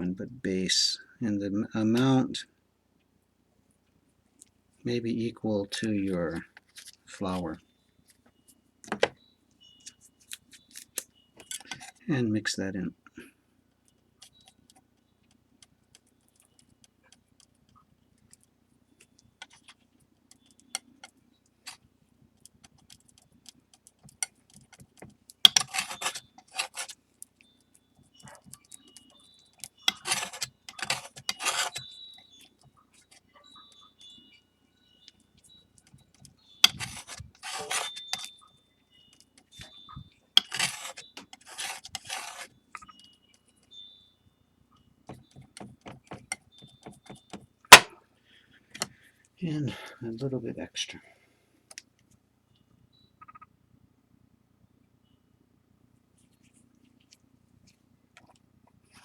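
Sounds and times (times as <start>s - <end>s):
palette knife scraping paste: 25.5s - 27.0s, 29.8s - 31.8s, 36.6s - 38.3s, 40.4s - 42.5s.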